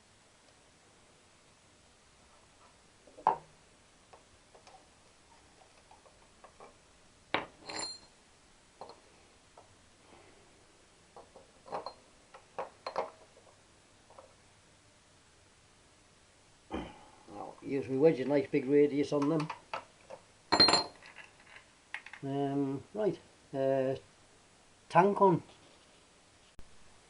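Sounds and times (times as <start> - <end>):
metal tools clinking on workbench: 7.4 - 8.2, 20.5 - 21.2.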